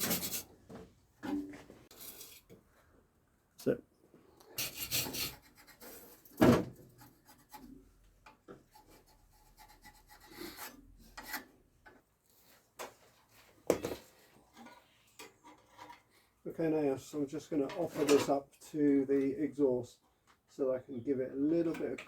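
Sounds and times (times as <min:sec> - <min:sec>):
steel patch scraping and knocking: 0:00.0 - 0:00.5, 0:04.6 - 0:11.5, 0:13.7 - 0:16.2, 0:17.6 - 0:18.4.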